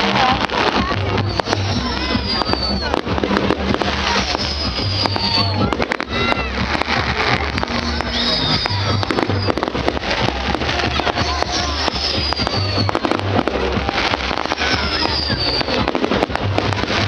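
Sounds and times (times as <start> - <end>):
fireworks crackling and banging: 0.0 - 17.0
music playing: 0.0 - 17.0.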